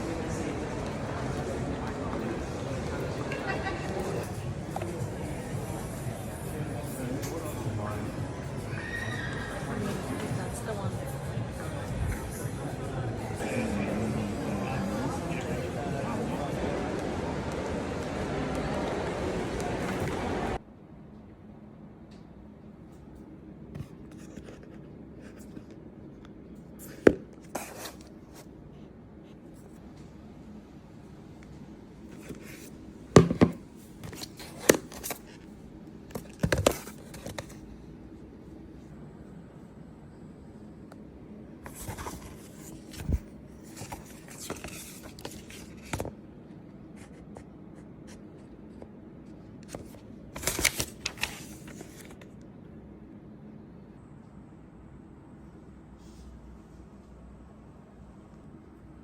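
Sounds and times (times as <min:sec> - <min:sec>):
box packaging rustling and scraping: 0:32.2 - 0:35.4, 0:41.7 - 0:46.1, 0:49.7 - 0:52.2.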